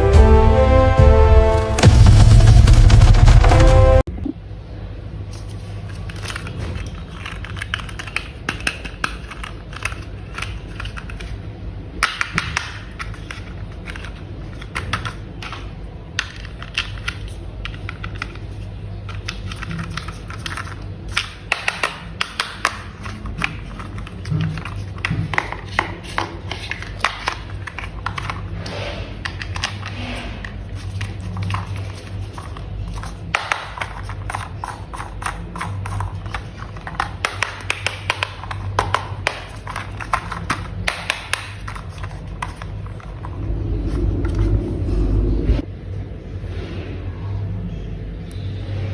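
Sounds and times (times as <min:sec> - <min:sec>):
plastic toy parts clicking: 0:05.3 - 0:11.4, 0:12.0 - 0:28.6, 0:29.2 - 0:43.1.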